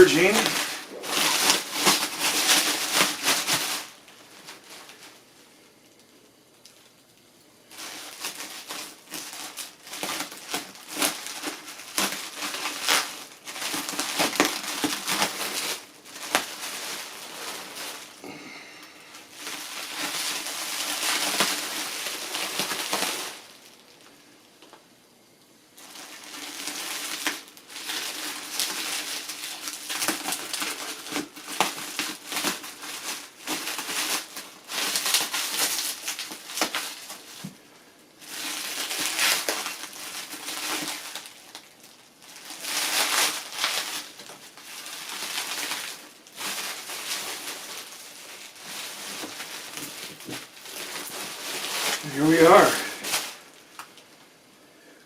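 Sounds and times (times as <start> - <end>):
packing material crinkling: 0.0 - 25.0, 25.7 - 55.0.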